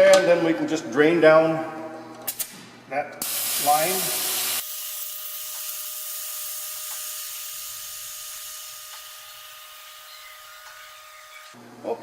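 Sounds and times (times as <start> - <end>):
compressed air hissing from valve: 3.2 - 11.0.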